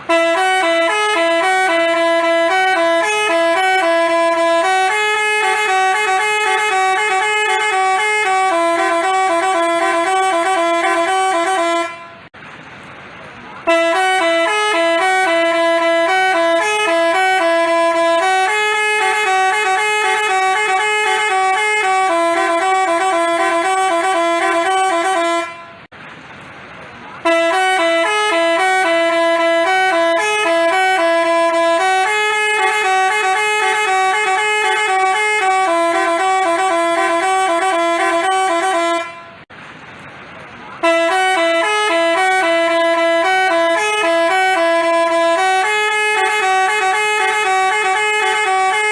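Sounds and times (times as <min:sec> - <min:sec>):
bus horn playing a melody: 0:00.0 - 0:12.4, 0:13.6 - 0:25.9, 0:27.2 - 0:39.5, 0:40.8 - 0:48.9.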